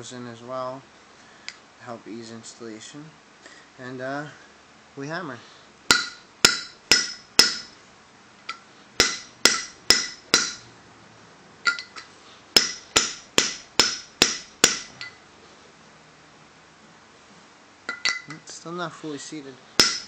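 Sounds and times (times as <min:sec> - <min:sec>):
hammer striking metal with ring: 0:05.9 - 0:07.8, 0:08.5 - 0:10.6, 0:11.7 - 0:15.2, 0:17.9 - 0:18.4, 0:19.8 - 0:20.0.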